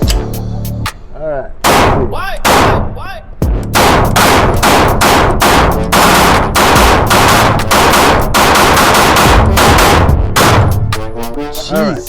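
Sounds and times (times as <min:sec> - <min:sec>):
rapid handgun shots: 0:01.6 - 0:02.9, 0:03.8 - 0:10.8.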